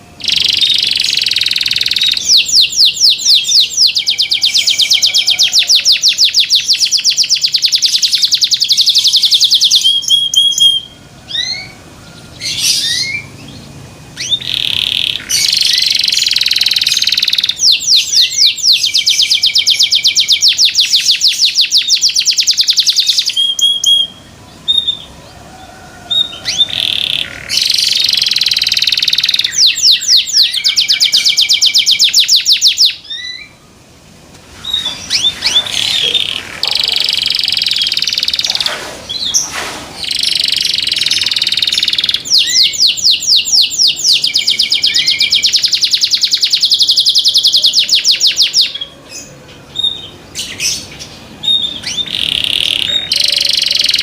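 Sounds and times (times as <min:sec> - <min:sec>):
canary singing trills: 0:00.0 - 0:33.8, 0:34.5 - 0:54.0.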